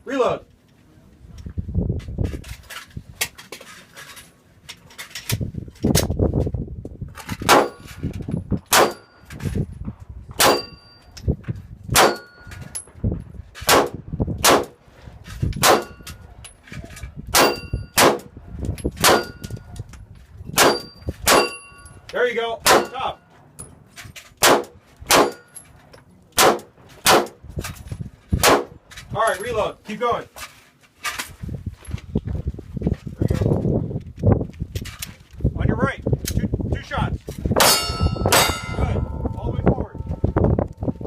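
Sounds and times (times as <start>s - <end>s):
pistol shots: 7.5s - 7.8s, 8.7s - 9.0s, 10.4s - 10.7s, 12.0s - 12.3s, 13.7s - 14.8s, 15.6s - 16.0s, 17.4s - 18.3s, 19.0s - 19.4s, 20.6s - 21.6s, 22.6s - 23.0s, 24.4s - 25.4s, 26.4s - 27.4s, 28.4s - 28.7s
steel target clanging: 10.4s - 11.2s, 19.0s - 19.6s, 20.6s - 22.0s, 24.5s - 25.9s, 37.6s - 40.6s.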